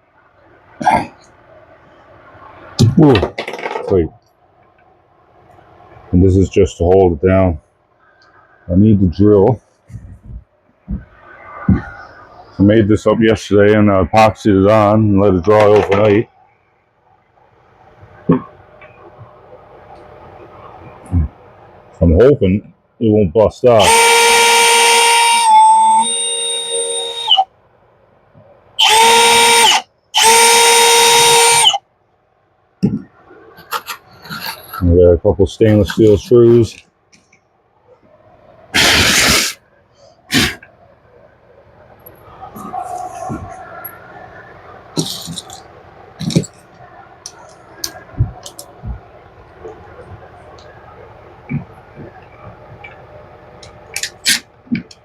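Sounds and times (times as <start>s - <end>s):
electric drill whining: 23.8s - 27.4s, 28.8s - 31.8s.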